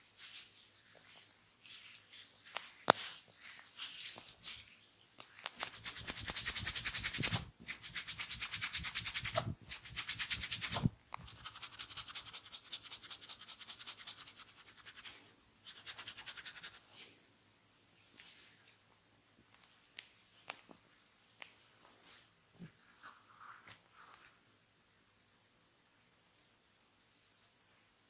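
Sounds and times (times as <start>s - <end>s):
hands rubbing skin briskly: 5.5s - 16.8s.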